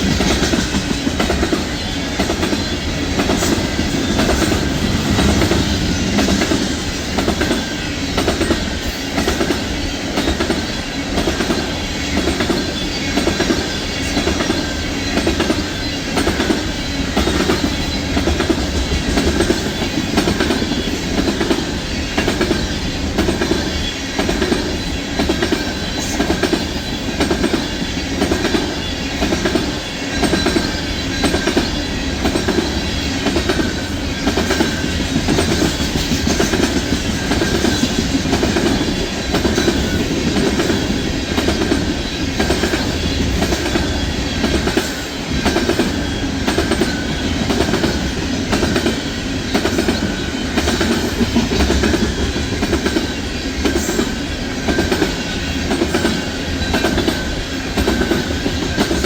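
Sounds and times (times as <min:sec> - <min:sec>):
train wheels clicking over rail joints: 0:00.0 - 0:59.0.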